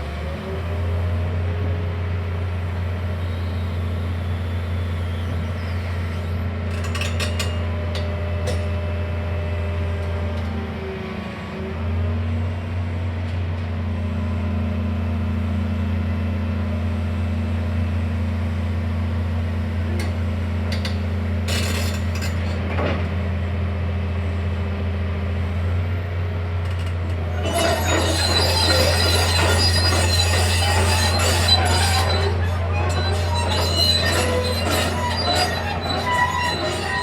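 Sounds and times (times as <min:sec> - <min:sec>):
excavator diesel engine humming: 0:23.4 - 0:37.0
metallic clinking and squealing: 0:26.9 - 0:37.0.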